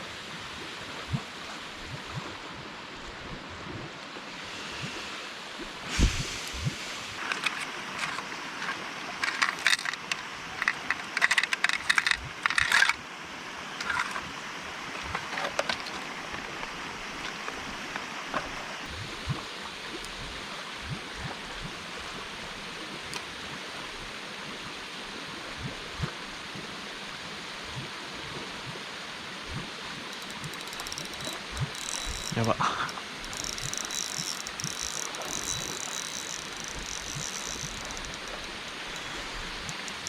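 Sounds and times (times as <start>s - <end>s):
steady outdoor hiss: 0.0s - 40.0s
clicks of small hard objects: 7.2s - 13.0s, 15.0s - 16.5s, 30.2s - 40.0s.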